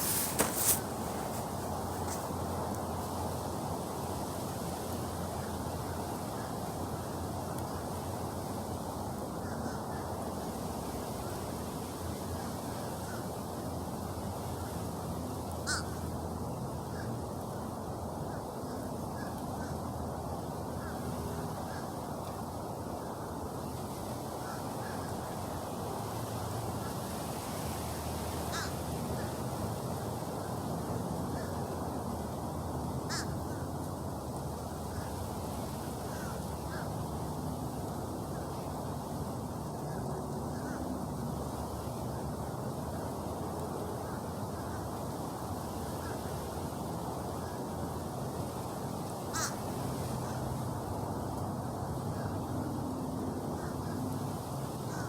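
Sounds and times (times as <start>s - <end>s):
crows cawing: 15.6s - 16.0s, 28.5s - 28.8s, 33.1s - 33.4s, 36.1s - 36.9s, 49.3s - 49.6s.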